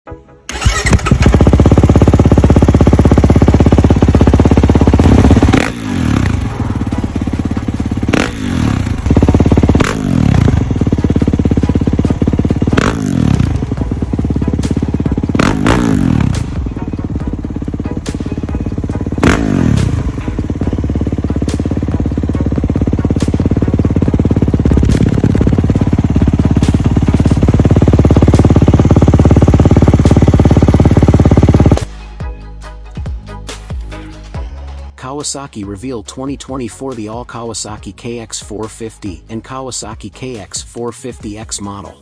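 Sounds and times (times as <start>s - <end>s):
motocross bike engine revving: 0.5s - 31.9s.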